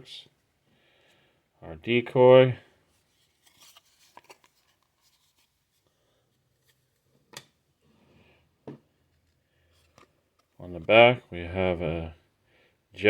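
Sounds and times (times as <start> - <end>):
soft rustling of cards: 1.9 - 12.1.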